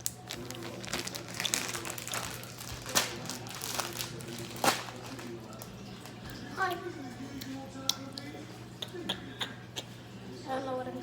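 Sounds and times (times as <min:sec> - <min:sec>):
plastic packaging crinkling: 0:00.0 - 0:06.2.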